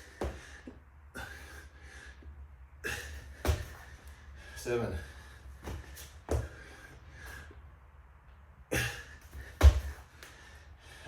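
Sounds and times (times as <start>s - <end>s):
person breathing hard: 0.0s - 7.8s, 8.7s - 11.0s
thuds on the floor: 3.4s - 3.8s, 9.6s - 10.0s.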